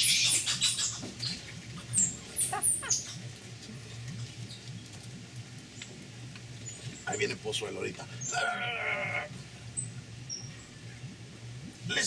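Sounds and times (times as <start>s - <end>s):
monkeys squealing: 0.0s - 1.0s, 1.9s - 3.2s, 8.2s - 9.3s.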